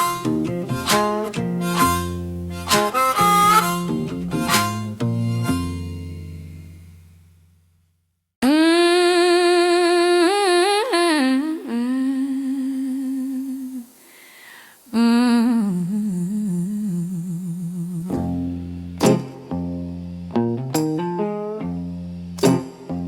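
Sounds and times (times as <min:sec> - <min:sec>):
plucked guitar notes: 0:00.0 - 0:07.6, 0:18.1 - 0:23.0.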